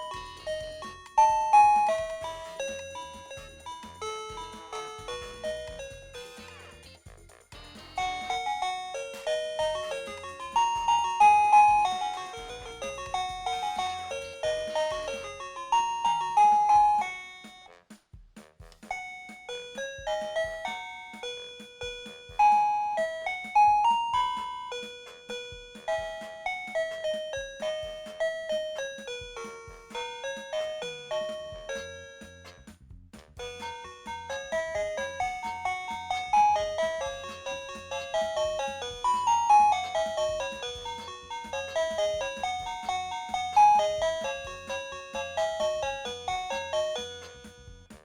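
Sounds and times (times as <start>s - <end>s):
doorbell chime melody: 0.0s - 6.4s, 8.0s - 17.7s, 19.0s - 32.5s, 33.5s - 47.8s.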